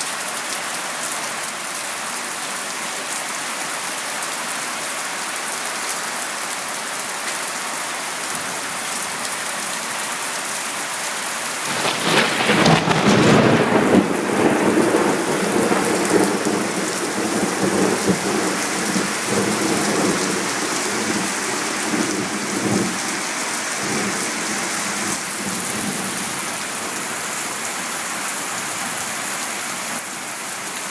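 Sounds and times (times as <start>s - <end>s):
heavy rain: 0.0s - 30.9s
thunder crashing and rumbling: 11.7s - 23.0s.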